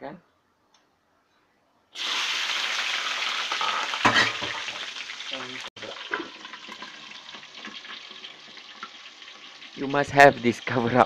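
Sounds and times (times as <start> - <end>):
food sizzling in hot oil: 2.0 - 11.0
oil popping spatters: 2.0 - 11.0.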